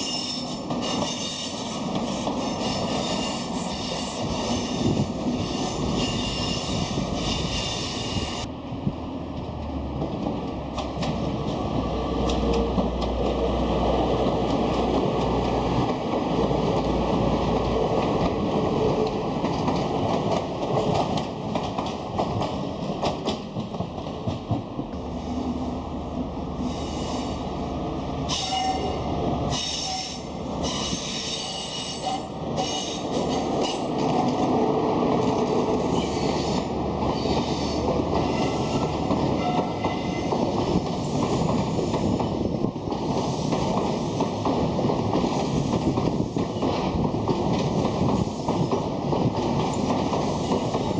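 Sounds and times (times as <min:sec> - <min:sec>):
train wheels rumbling on track: 0:00.0 - 0:50.9
high-pitched metallic squeals: 0:28.3 - 0:33.0.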